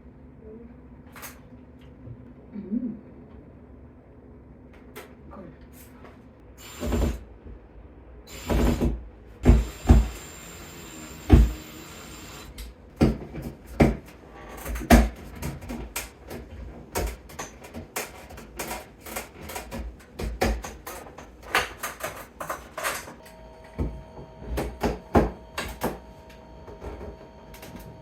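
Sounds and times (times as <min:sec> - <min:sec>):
power drill running: 0:06.6 - 0:07.2, 0:08.3 - 0:12.6, 0:23.2 - 0:28.0.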